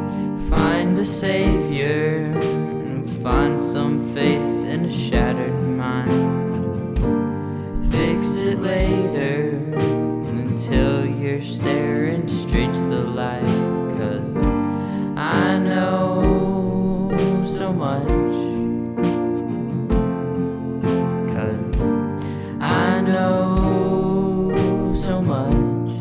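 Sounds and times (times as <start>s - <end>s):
low drum beat: 0.0s - 2.5s, 3.3s - 6.2s, 7.0s - 10.1s, 10.7s - 11.2s, 12.5s - 13.0s, 14.3s - 19.3s, 19.9s - 20.3s, 21.7s - 26.0s
keyboard chords: 0.0s - 26.0s
person singing long notes: 22.6s - 26.0s.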